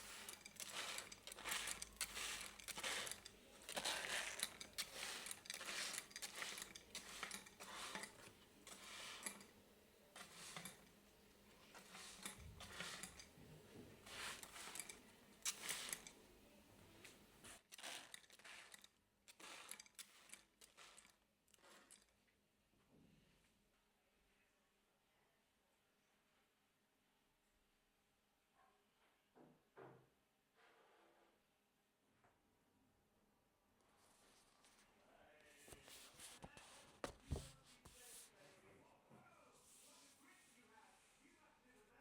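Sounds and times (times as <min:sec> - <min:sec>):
small things being handled: 0:00.0 - 0:22.4, 0:34.0 - 0:38.4.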